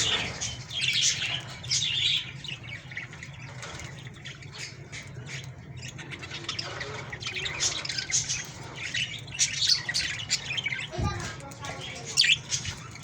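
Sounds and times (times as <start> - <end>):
small birds chirping and squawking: 0.0 - 13.0.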